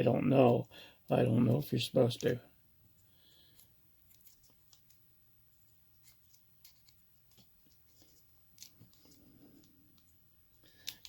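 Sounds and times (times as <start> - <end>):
small metal parts clicking and scratching: 3.4 - 5.0, 5.6 - 9.7, 10.7 - 11.0.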